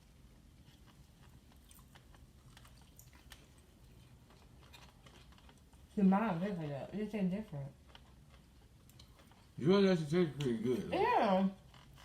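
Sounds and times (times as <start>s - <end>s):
faint chewing and mouth clicks: 0.0s - 6.0s, 7.5s - 9.6s.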